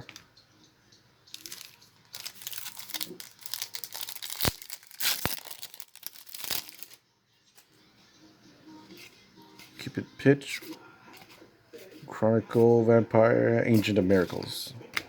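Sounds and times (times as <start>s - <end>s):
foil wrapper crinkling and tearing: 1.3s - 7.0s.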